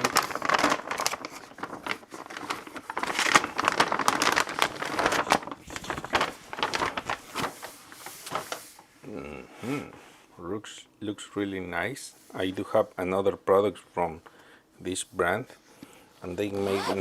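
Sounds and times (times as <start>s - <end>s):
plastic bag crinkling: 0.0s - 8.8s.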